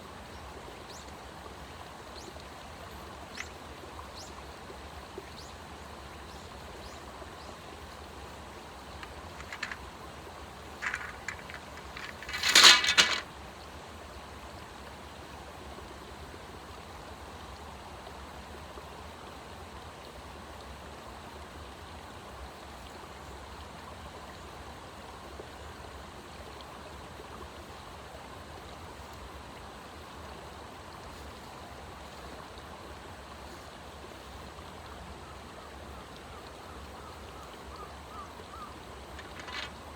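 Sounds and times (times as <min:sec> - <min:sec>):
flowing stream: 0:00.0 - 0:39.9
faint clicks: 0:08.8 - 0:10.1, 0:10.7 - 0:13.3, 0:38.5 - 0:39.9
loud rapid rattling burst: 0:09.1 - 0:09.8, 0:10.8 - 0:13.2.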